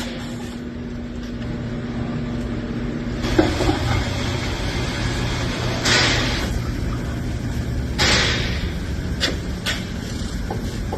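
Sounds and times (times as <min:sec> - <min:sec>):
low mechanical hum: 0:00.0 - 0:10.9.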